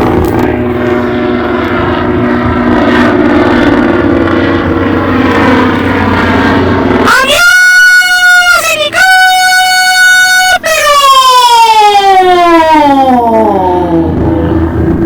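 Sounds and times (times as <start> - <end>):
helicopter rotor and turbine drone: 0.0 - 15.0.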